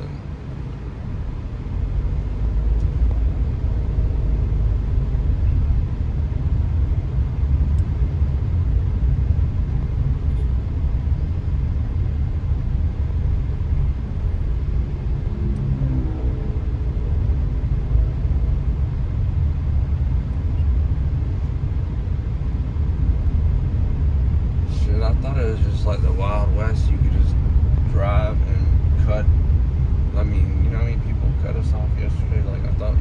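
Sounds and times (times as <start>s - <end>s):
car engine rumble: 0.0s - 33.0s
road noise: 0.0s - 33.0s.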